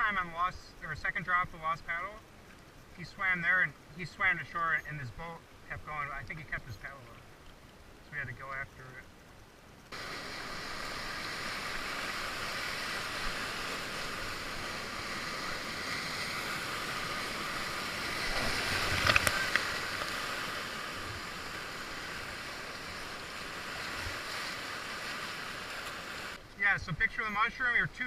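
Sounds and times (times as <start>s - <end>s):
whitewater rapids rushing: 10.0s - 26.4s.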